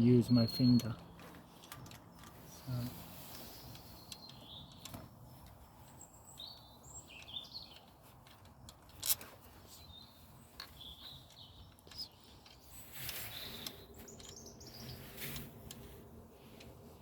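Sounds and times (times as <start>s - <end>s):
small birds chirping: 0.0s - 17.0s
metal parts clicking: 7.2s - 9.4s.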